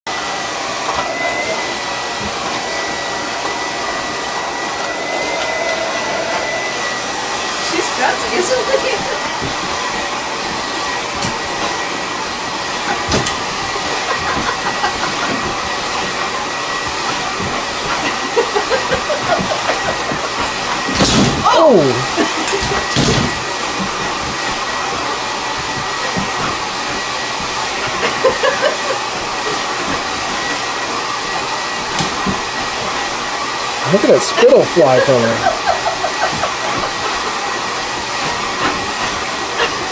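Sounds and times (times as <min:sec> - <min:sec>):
hair dryer blowing: 0:00.1 - 0:39.9.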